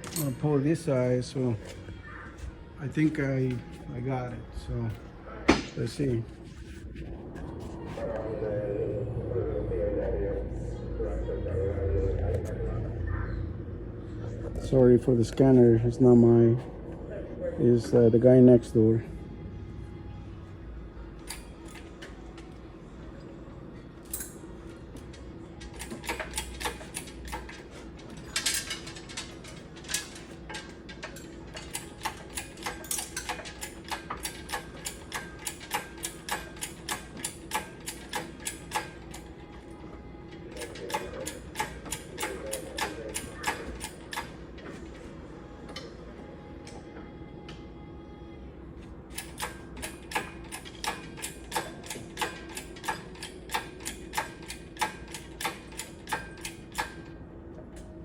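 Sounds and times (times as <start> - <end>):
low hum: 0.0 - 37.5
ratchet clicking: 25.6 - 39.3, 40.6 - 44.4, 49.1 - 57.1.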